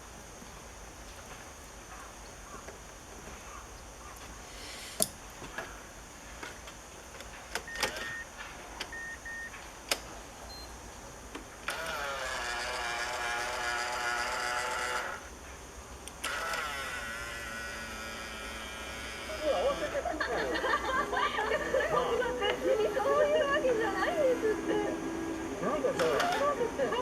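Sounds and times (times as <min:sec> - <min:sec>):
folding mirror motor whine: 0:06.7 - 0:15.4, 0:16.0 - 0:27.0.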